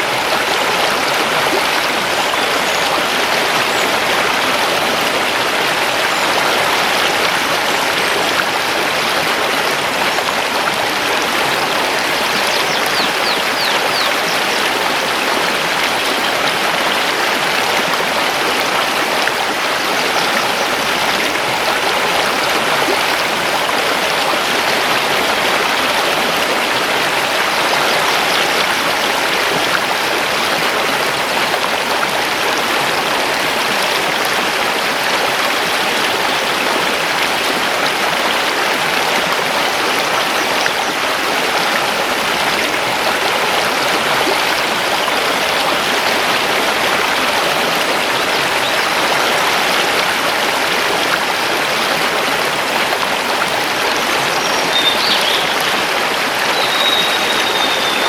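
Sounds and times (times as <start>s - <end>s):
river rushing over stones: 0.0s - 58.0s
high bird chirp: 12.4s - 14.2s, 56.6s - 58.0s.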